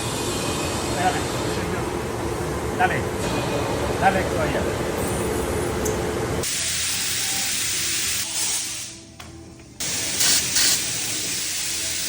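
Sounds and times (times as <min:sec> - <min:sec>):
spray gun hissing: 0:06.4 - 0:09.0, 0:09.8 - 0:12.0
background music: 0:06.4 - 0:12.0.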